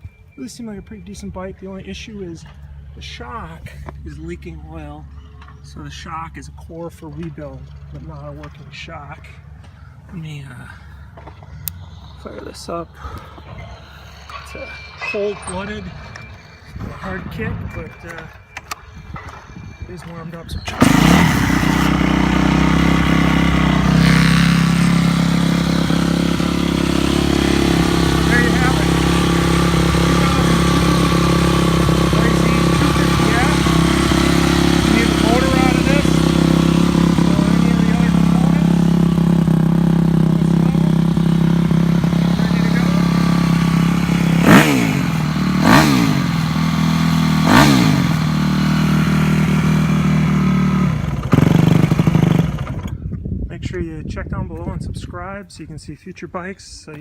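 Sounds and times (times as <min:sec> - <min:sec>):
motorcycle engine running: 0:20.6 - 0:53.2.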